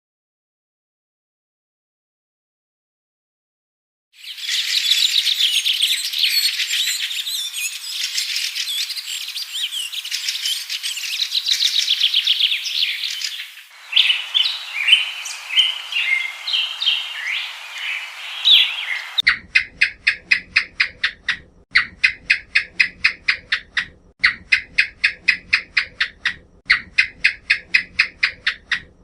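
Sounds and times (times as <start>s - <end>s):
quick repeated pulsing bird call: 4.2s - 19.2s
small birds chirping: 4.2s - 19.3s.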